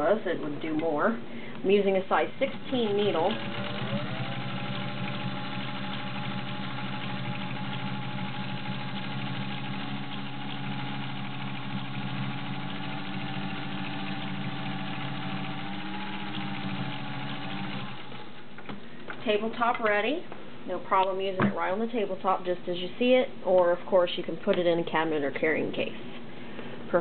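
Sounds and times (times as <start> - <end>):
sewing machine running: 2.4 - 18.5.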